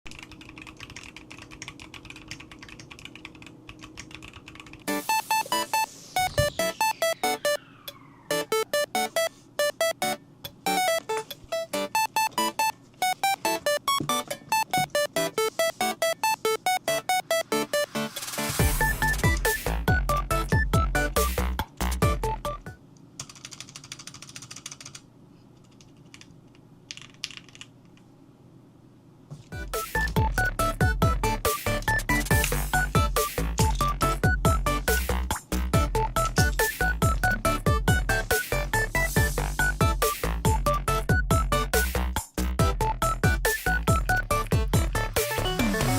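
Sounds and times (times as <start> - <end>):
mechanical keyboard typing: 0.1 - 5.0, 23.2 - 25.0, 25.6 - 28.0
background music: 4.4 - 22.8, 29.6 - 45.9.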